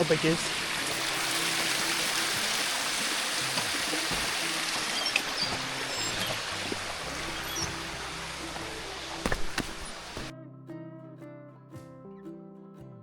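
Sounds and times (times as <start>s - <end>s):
stream flowing: 0.0s - 10.3s.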